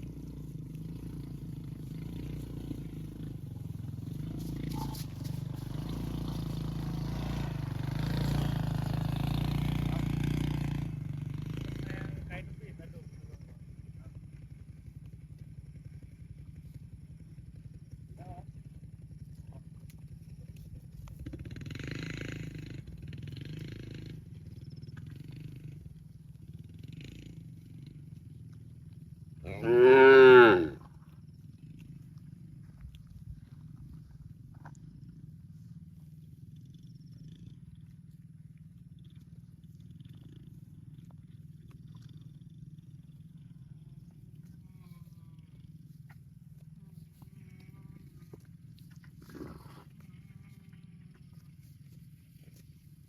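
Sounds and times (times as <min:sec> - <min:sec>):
low steady rumble: 0:00.0 - 0:53.0
small engine running: 0:00.0 - 0:53.0
cow mooing: 0:29.4 - 0:30.9.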